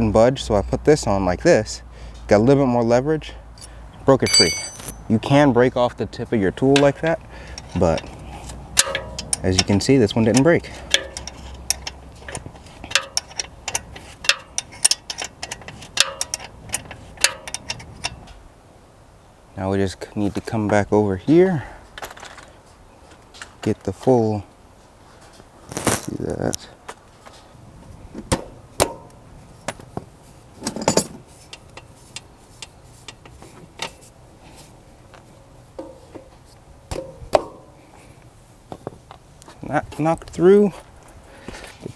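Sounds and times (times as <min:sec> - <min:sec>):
metal wrench clicking: 0:03.6 - 0:05.0, 0:07.6 - 0:09.8, 0:10.4 - 0:18.2
metal tools clinking and knocking: 0:04.2 - 0:05.1, 0:08.8 - 0:18.3, 0:30.7 - 0:31.6.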